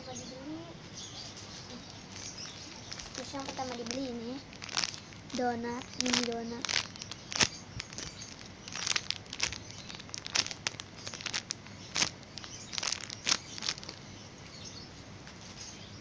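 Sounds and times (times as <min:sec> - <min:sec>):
squishy toy crinkling: 0:01.7 - 0:14.0.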